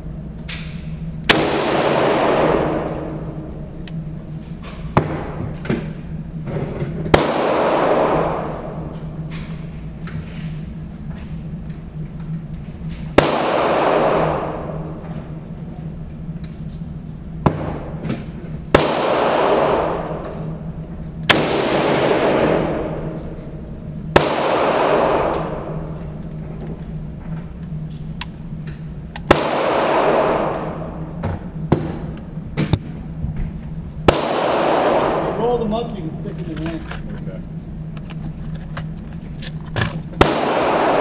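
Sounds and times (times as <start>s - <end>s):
low hum: 0.0s - 41.0s
gunshots echoing: 1.3s - 3.8s, 7.0s - 9.6s, 13.1s - 15.5s, 17.4s - 26.8s, 29.2s - 33.0s, 34.0s - 36.8s, 40.2s - 41.0s.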